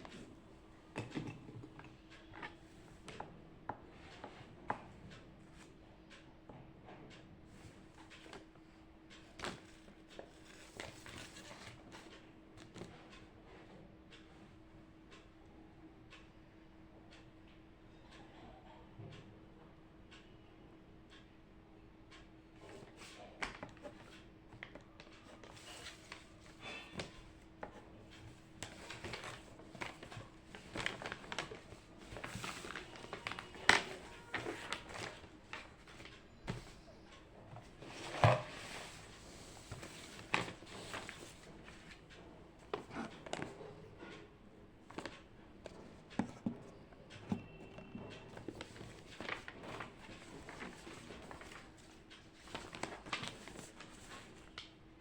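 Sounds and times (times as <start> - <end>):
writing and handling paper: 9.2 - 13.0, 22.6 - 44.2, 44.8 - 54.6.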